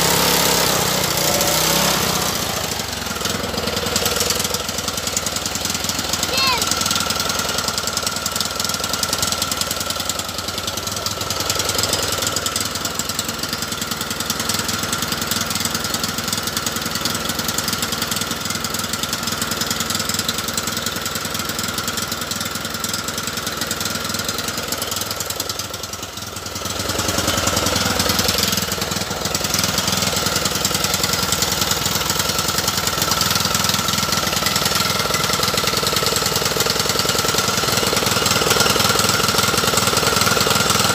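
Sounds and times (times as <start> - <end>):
lawn mower engine running: 0.0 - 40.9.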